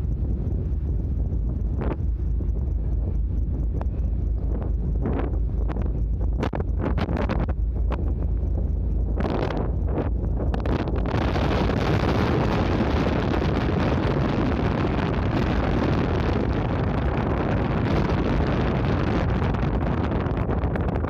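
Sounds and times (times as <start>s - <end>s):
ship engine low rumble: 0.0s - 21.0s
wind buffeting microphone: 0.0s - 21.0s.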